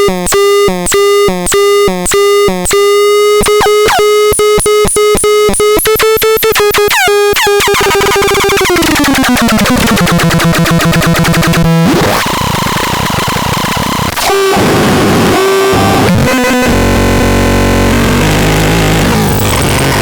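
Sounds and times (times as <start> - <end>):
buzzy stuttering synthesizer tone: 1.5 - 20.0
harsh noisy synth wash: 5.9 - 20.0.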